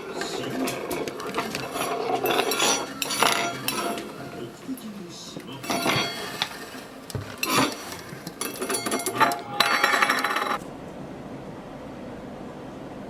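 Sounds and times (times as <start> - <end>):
cutlery and dishes clinking: 0.0 - 10.6.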